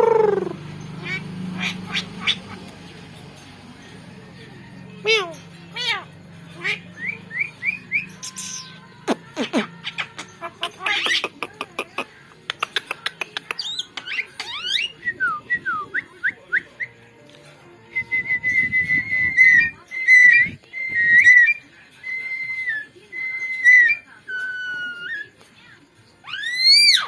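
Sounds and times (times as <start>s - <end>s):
bird whistling: 0.0s - 2.7s, 5.0s - 11.6s, 12.6s - 17.0s, 17.9s - 25.4s, 26.2s - 27.0s
bird clicking rapidly: 10.1s - 14.8s.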